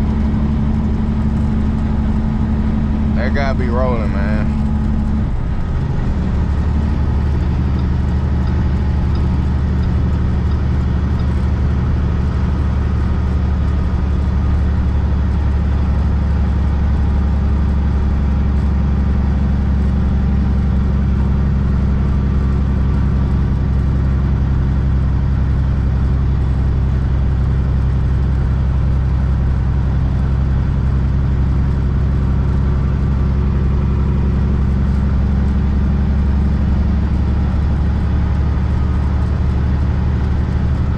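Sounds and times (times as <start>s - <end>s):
truck diesel engine droning: 0.0s - 40.9s.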